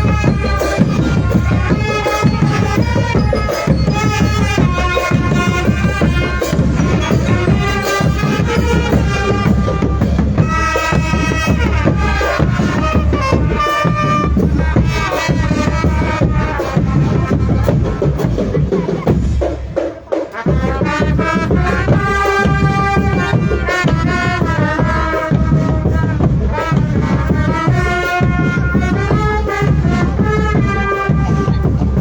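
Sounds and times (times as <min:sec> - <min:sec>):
marching drum band playing: 0:00.0 - 0:32.0.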